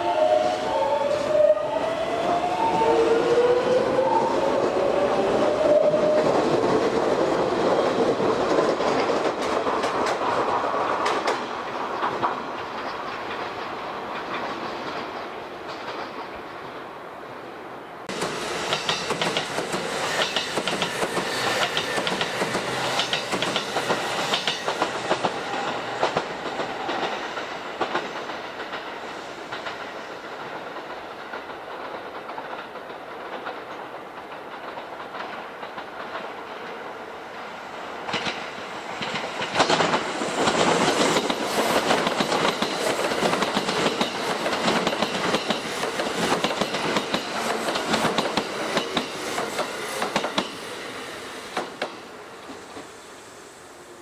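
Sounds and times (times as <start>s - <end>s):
train wheels clacking over rail joints: 6.3s - 16.6s, 18.1s - 36.8s, 38.0s - 50.6s.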